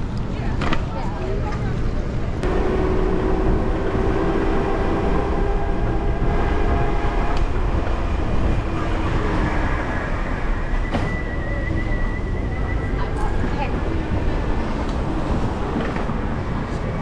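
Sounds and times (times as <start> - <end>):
street traffic: 0.0 - 17.0
wind rumbling on microphone: 1.8 - 17.0
steady hum: 2.4 - 9.1
high wavering whine: 2.4 - 15.8.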